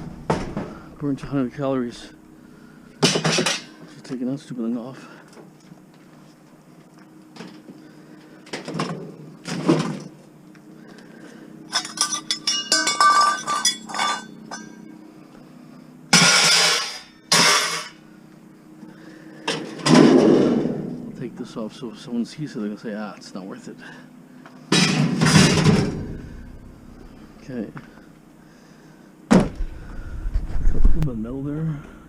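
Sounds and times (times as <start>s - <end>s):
metallic clinks and rattles: 11.7s - 14.8s.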